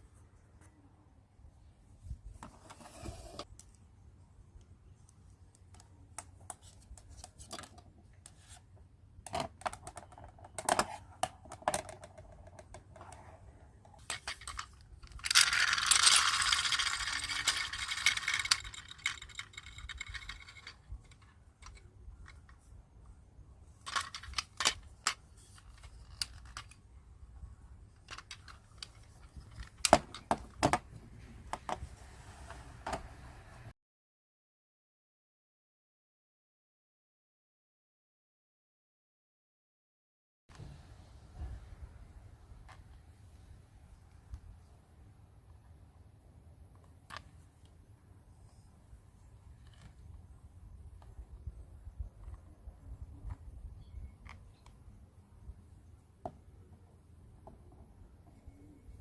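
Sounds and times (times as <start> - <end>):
plastic toy pieces clattering: 14.0 - 22.6, 23.8 - 26.8, 28.0 - 30.4.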